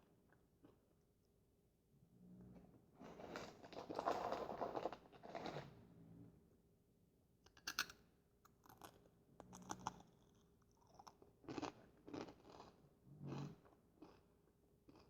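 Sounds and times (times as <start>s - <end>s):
corn chips crunching: 8.6s - 12.7s.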